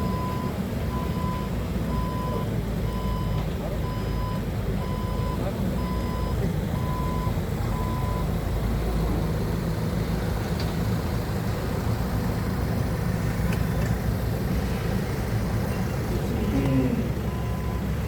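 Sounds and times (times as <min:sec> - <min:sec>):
reversing alarm beep: 0:00.0 - 0:08.3, 0:17.3 - 0:17.9
forklift engine running: 0:00.0 - 0:18.0.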